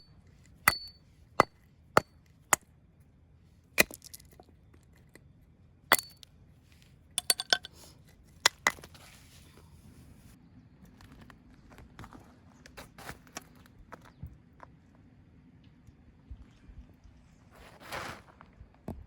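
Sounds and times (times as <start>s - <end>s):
sharp knocks with metallic ring: 0.7s - 2.1s.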